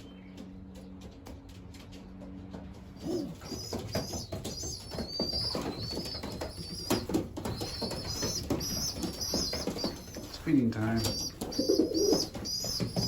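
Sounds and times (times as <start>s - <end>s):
pigeons cooing: 2.9s - 13.0s
young pigeons squeaking: 2.9s - 13.0s.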